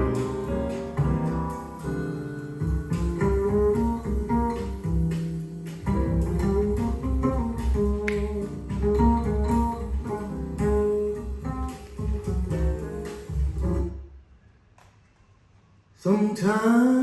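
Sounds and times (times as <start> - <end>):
plucked guitar: 0.0 - 13.9.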